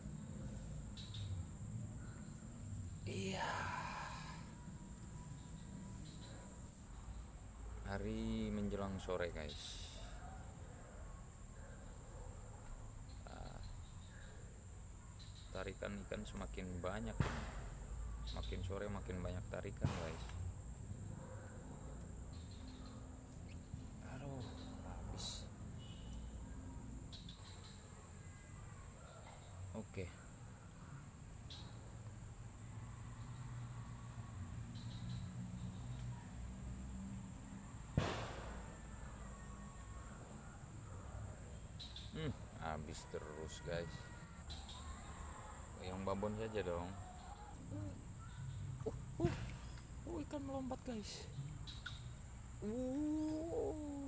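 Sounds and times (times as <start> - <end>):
insect chorus trilling: 0.0 - 54.0
sharp knock: 17.2 - 17.8, 19.8 - 20.4, 38.0 - 38.8.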